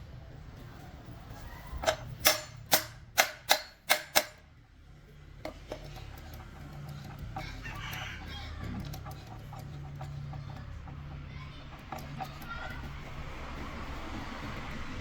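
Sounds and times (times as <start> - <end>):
hammer striking metal: 1.8 - 4.4.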